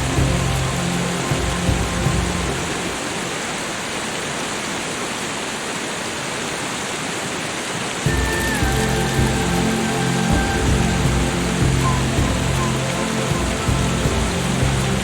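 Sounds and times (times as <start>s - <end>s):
soft low music tones: 0.0s - 3.9s, 8.0s - 15.0s
falling water hiss: 0.0s - 15.0s.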